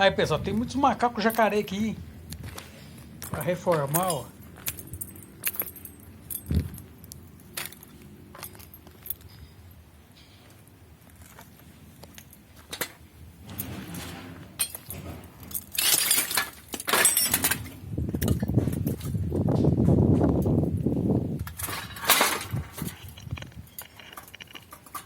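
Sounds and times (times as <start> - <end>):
scrap metal clinking: 2.7 - 19.1, 21.5 - 25.0
rustling scraping noise: 12.6 - 20.3, 21.4 - 25.0.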